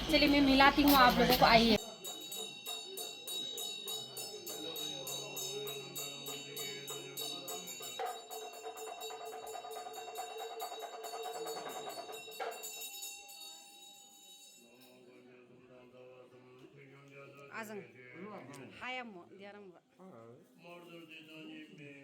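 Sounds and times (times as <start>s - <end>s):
jingling bell beat: 0.0s - 15.2s.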